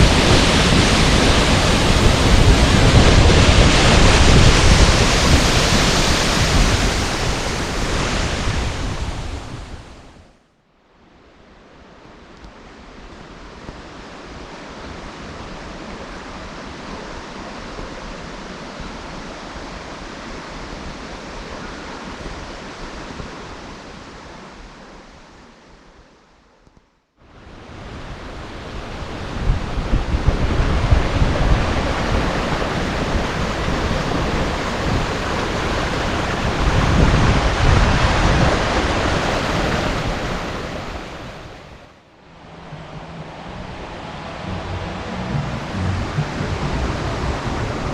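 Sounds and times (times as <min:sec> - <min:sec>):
waterfall roar: 0:00.0 - 0:09.6, 0:27.4 - 0:47.9
wind buffeting microphone: 0:00.0 - 0:10.4, 0:27.4 - 0:47.9.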